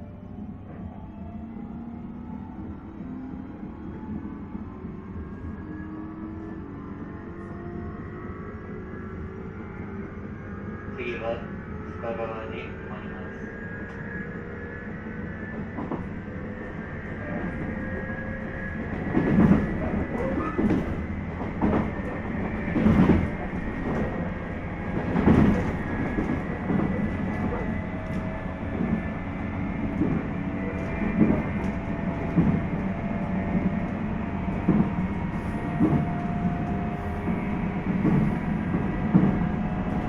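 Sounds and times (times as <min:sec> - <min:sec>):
train running rumble with whine: 0:00.0 - 0:40.0.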